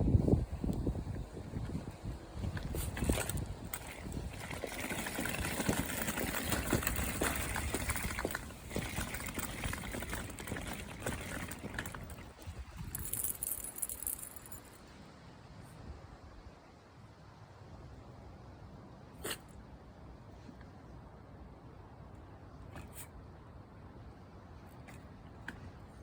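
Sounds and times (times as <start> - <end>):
dog collar tags jingling: 12.8 - 14.8.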